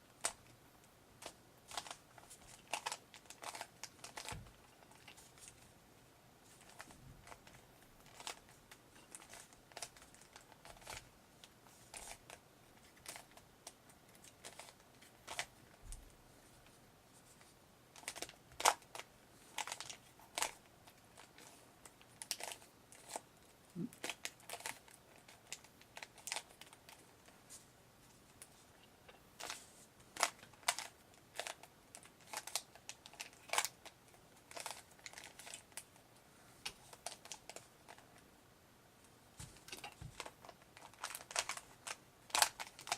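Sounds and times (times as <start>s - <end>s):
puzzle cube plastic clicks: 1.2s - 5.2s, 21.2s - 23.2s, 39.7s - 42.9s.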